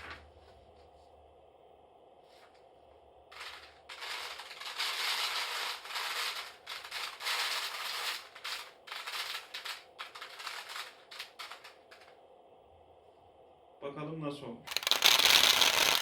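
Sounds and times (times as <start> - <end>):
rice grains falling on paper: 14.7 - 16.0.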